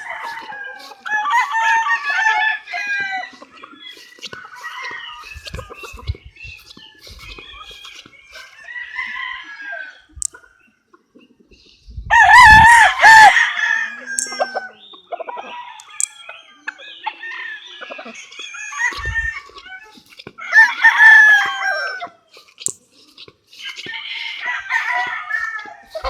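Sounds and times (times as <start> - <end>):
rooster crowing: 0.0 - 6.0, 7.2 - 10.1, 12.1 - 14.8, 20.4 - 22.1, 23.9 - 26.0
chickens clucking: 0.0 - 26.0.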